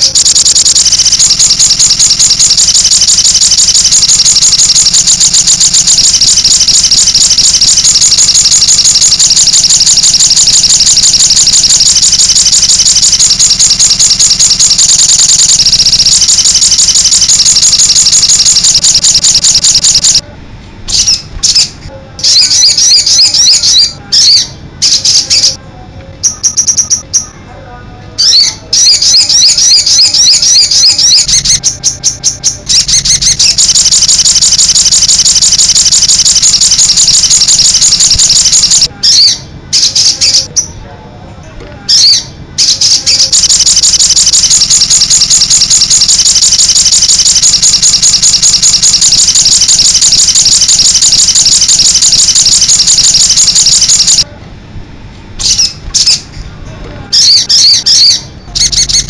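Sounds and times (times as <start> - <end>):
bird singing rapid high notes: 0.0 - 20.2, 20.9 - 25.6, 28.2 - 40.5.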